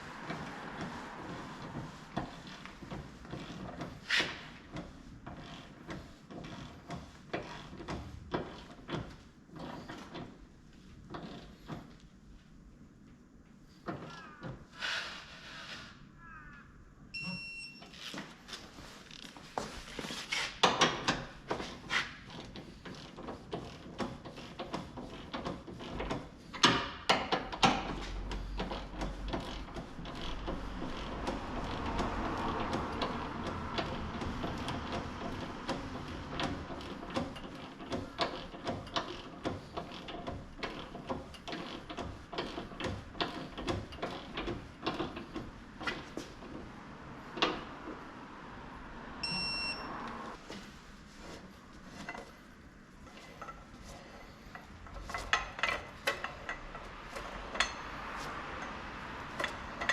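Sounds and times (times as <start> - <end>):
steady background noise: 0.0 - 59.9
short high beep: 17.2 - 17.8, 49.2 - 49.9.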